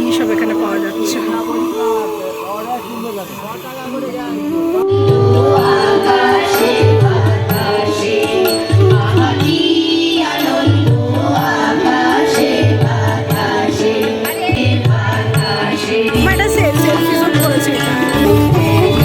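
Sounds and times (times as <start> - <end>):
person singing long bending notes: 0.0 - 19.0
low drum beat: 14.5 - 19.0.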